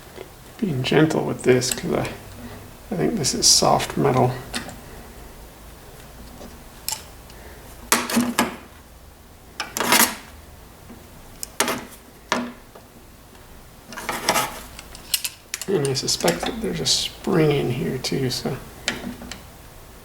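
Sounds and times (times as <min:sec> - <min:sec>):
metal parts clicking and clinking: 0:13.9 - 0:16.6.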